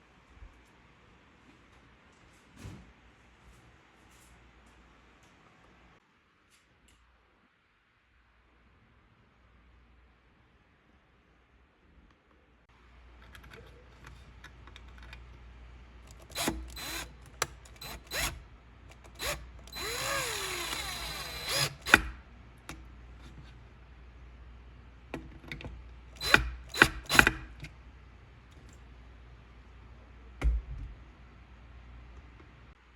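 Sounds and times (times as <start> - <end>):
power drill running: 16.1 - 18.4, 19.1 - 22.2, 26.2 - 27.4.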